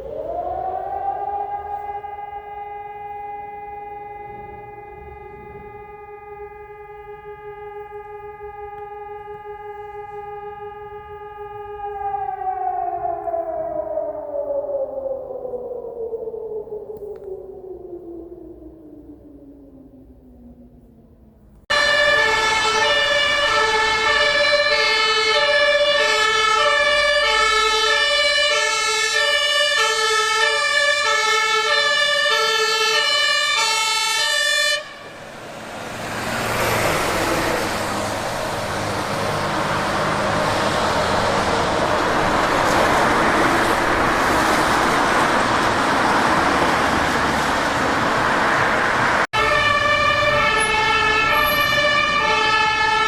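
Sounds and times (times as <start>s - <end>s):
fire engine two-tone siren: 0.0s - 53.0s
fire truck engine and road noise: 0.0s - 53.0s.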